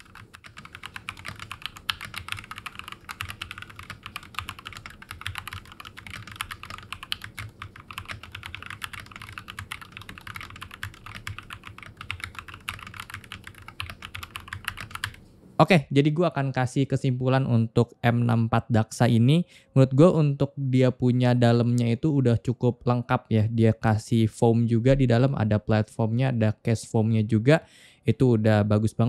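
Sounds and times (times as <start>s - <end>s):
mechanical keyboard typing: 0.0s - 15.2s.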